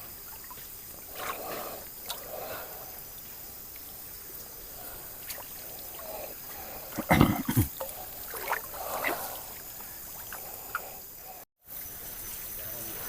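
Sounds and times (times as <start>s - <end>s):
river water trickling: 0.0s - 13.0s
knocks and splashes: 5.2s - 6.0s, 7.0s - 10.9s.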